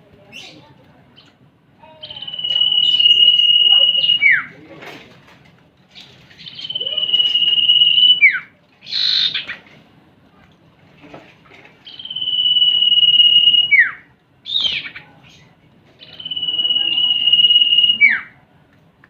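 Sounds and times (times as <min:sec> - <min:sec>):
harsh rasping bird call: 0:06.4 - 0:09.5.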